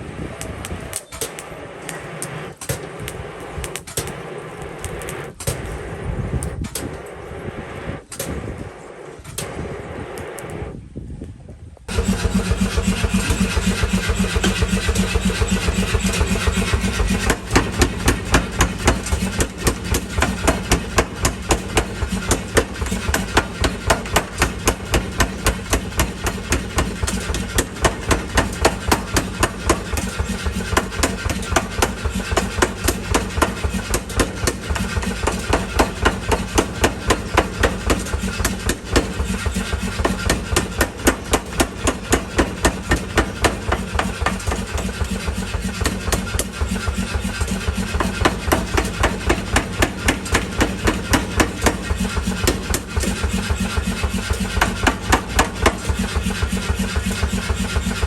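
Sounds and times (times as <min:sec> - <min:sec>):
power hammer striking: 0:00.0 - 0:10.7, 0:11.9 - 0:58.0
power hammer motor droning: 0:00.0 - 0:11.0, 0:11.9 - 0:58.0.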